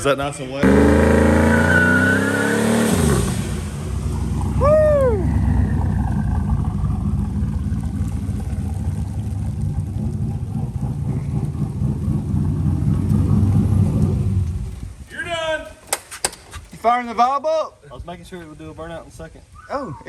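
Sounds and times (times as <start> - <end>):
short rising and falling tone: 0.6 - 14.8
car engine rumbling: 0.6 - 15.1.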